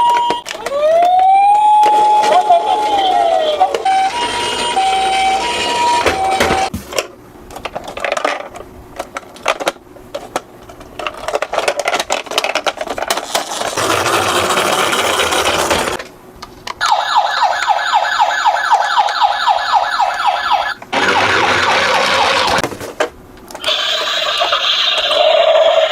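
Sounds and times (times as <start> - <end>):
toy electronic siren: 0.0 - 6.7, 16.8 - 22.6, 23.6 - 25.9
toy cars clicking and clattering: 6.6 - 16.0, 23.5 - 25.9.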